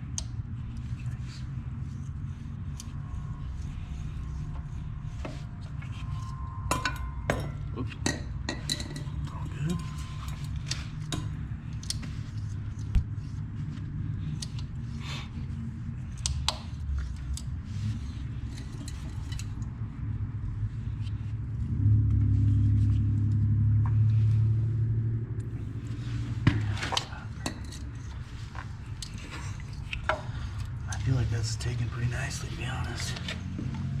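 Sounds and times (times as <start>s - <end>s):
low steady rumble: 0.0s - 34.0s
light metal clicks and scrapes: 16.0s - 19.8s, 25.5s - 32.1s.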